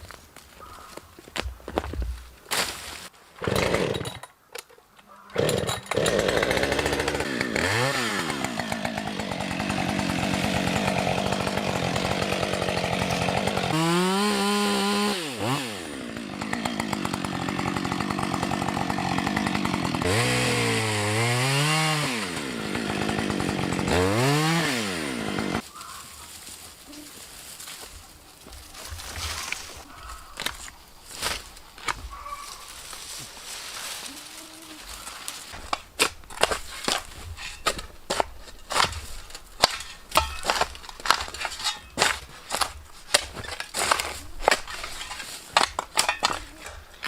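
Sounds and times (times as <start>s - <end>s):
chainsaw revving: 3.4s - 4.2s, 5.4s - 25.6s
chainsaw starting knocks: 5.4s - 13.8s.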